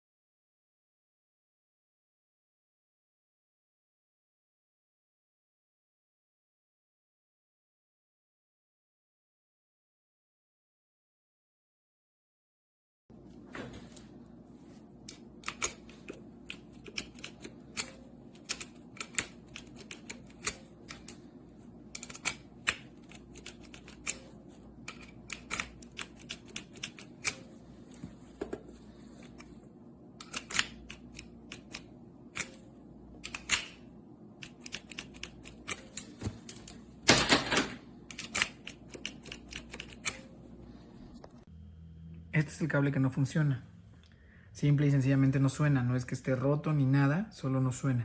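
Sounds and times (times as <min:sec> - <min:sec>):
faint steady hum: 0:13.1 - 0:48.0.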